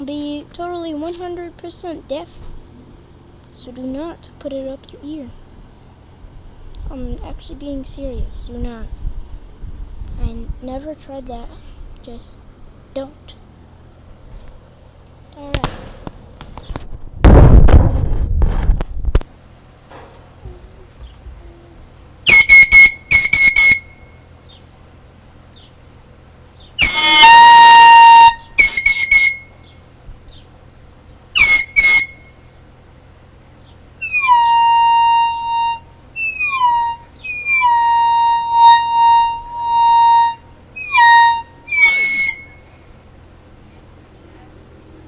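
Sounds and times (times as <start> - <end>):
air horn blasts: 22.2 - 24.2, 26.8 - 29.6, 31.4 - 32.4, 34.0 - 42.8.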